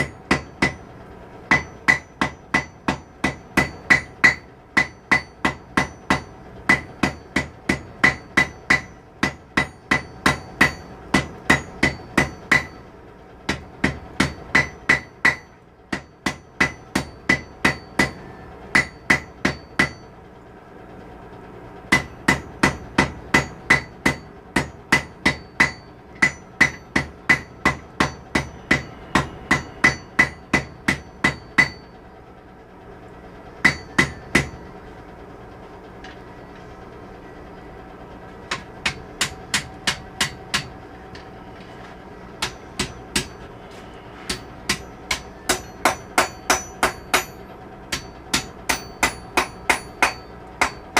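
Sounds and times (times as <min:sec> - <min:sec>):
hammer striking steel on anvil: 0:00.0 - 0:00.9, 0:01.5 - 0:12.9, 0:13.5 - 0:20.1, 0:21.9 - 0:31.9, 0:33.6 - 0:34.7, 0:38.5 - 0:41.2, 0:42.4 - 0:43.4, 0:44.2 - 0:50.9.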